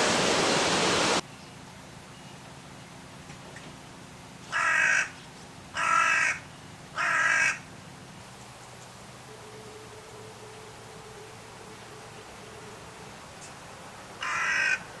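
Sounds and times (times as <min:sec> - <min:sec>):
crow cawing: 0:04.5 - 0:05.2, 0:05.8 - 0:06.4, 0:07.0 - 0:07.6, 0:14.2 - 0:14.9.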